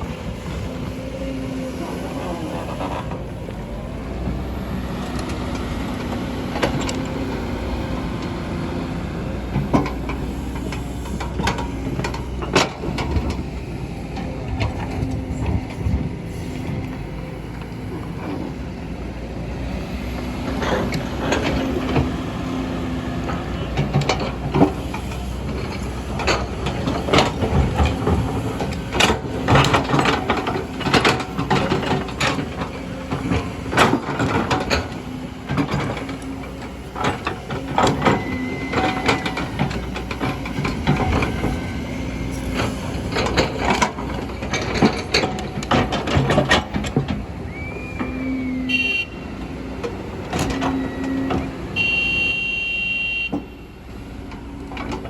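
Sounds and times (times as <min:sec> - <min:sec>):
excavator diesel engine hum: 0:00.0 - 0:55.0
metallic clanks and knocks: 0:23.2 - 0:47.3.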